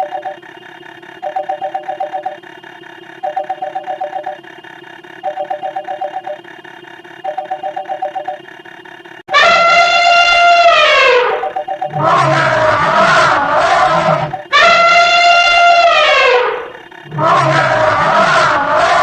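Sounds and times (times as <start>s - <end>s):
telephone ringing: 0.0s - 8.6s, 10.0s - 14.6s
steady drone: 0.0s - 19.0s
elephant trumpeting: 9.3s - 19.0s.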